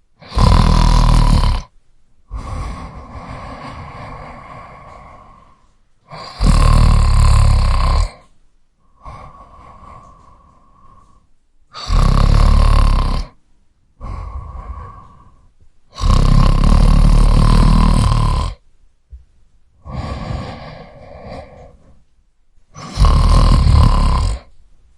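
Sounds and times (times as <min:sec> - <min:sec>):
quiet breaths: 0:00.0 - 0:24.9
man snoring: 0:00.2 - 0:01.7, 0:02.3 - 0:08.3, 0:09.0 - 0:13.4, 0:14.0 - 0:18.6, 0:19.8 - 0:22.0, 0:22.8 - 0:24.6.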